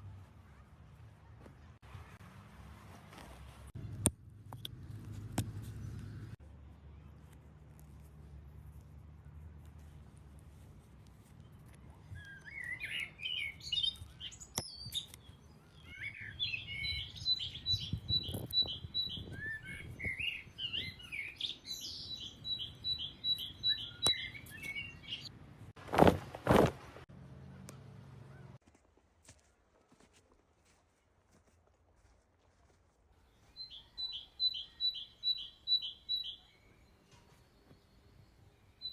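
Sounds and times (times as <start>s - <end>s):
birds chirping and twittering: 11.5s - 25.3s, 33.2s - 38.9s.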